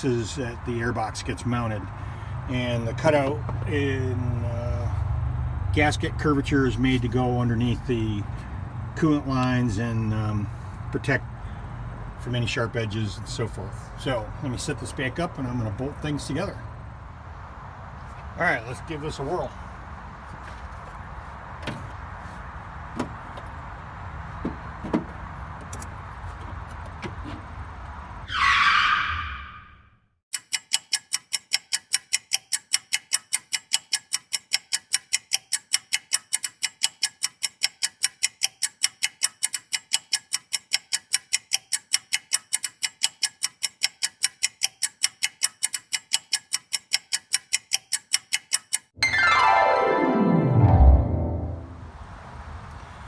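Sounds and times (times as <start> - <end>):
rapid clock-like ticking: 30.3 - 49.0.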